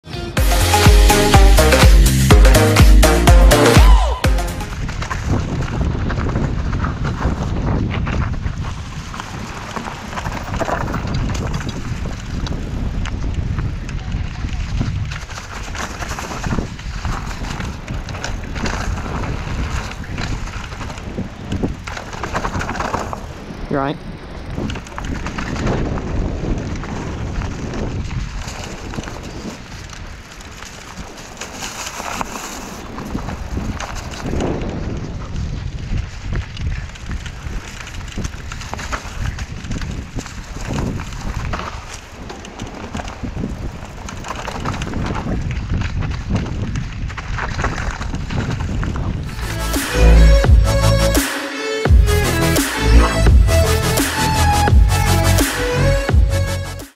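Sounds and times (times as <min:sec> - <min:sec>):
tyres rumbling on rough dirt: 0:04.6 - 0:51.2
bike clicks and rattles: 0:04.7 - 0:49.4
wind buffeting microphone: 0:04.7 - 0:49.4.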